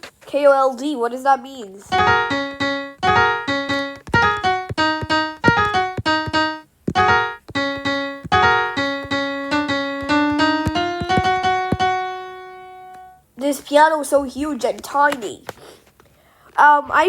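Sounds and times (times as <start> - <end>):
piano app notes: 1.9 - 13.3.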